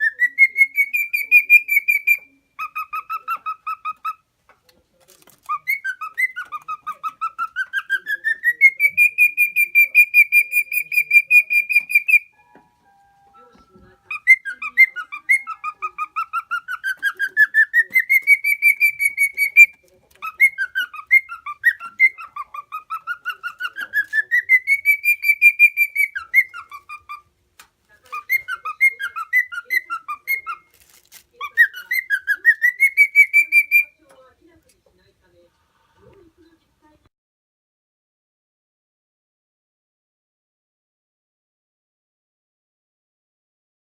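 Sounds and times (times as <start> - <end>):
cockatiel whistling: 0.0 - 4.2, 5.4 - 27.3, 28.1 - 30.8, 31.4 - 34.0.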